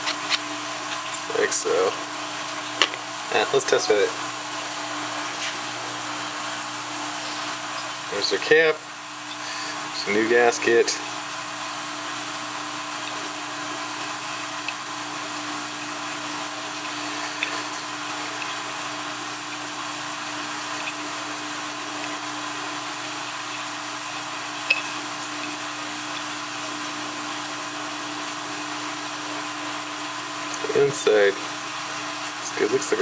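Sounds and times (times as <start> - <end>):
low background hum: 0.0 - 33.0.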